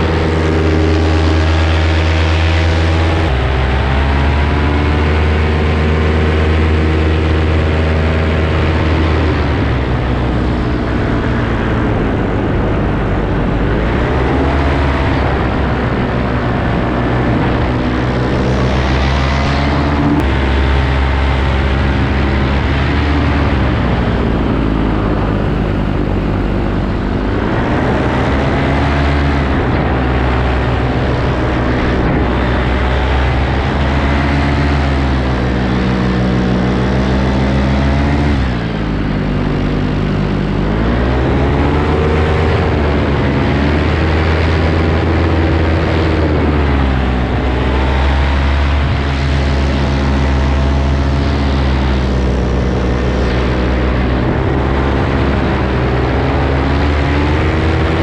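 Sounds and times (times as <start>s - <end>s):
paramotor engine drone: 0.0s - 58.0s.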